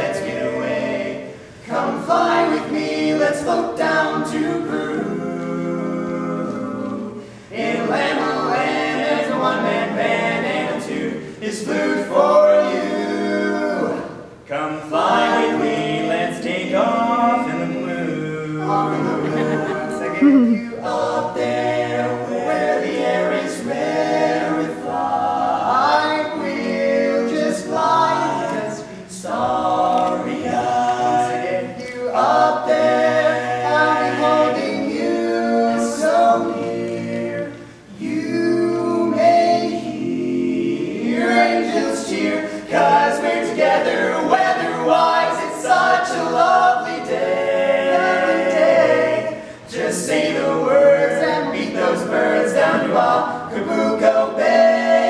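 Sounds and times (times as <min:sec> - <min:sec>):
quartet singing in harmony: 0:00.0 - 0:55.0.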